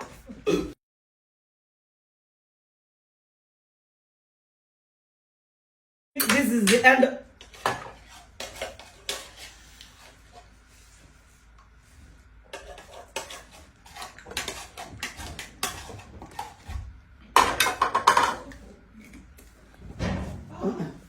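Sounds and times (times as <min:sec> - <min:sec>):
spoons clinking against bowls: 0:06.2 - 0:09.5, 0:17.4 - 0:18.6.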